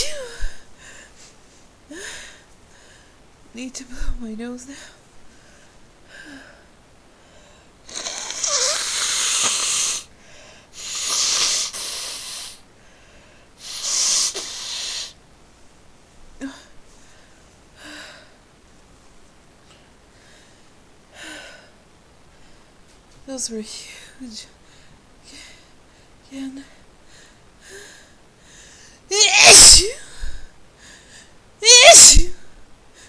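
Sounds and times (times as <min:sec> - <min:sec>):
person blowing nose: 0:07.9 - 0:10.1, 0:10.8 - 0:12.6, 0:13.6 - 0:15.2, 0:29.2 - 0:29.9, 0:31.6 - 0:32.4.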